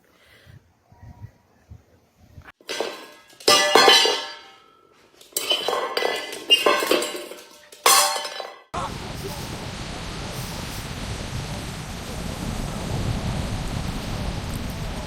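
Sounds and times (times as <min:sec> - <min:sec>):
hard objects clattering and clinking: 0:02.6 - 0:08.7
steady rushing hiss: 0:08.8 - 0:15.0.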